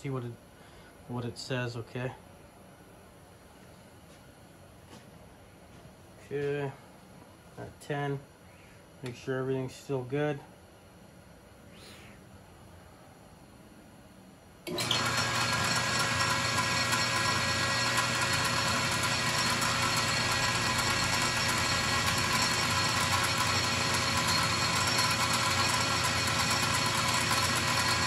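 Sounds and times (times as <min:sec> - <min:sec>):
metal lathe humming and whining: 0:14.7 - 0:28.0.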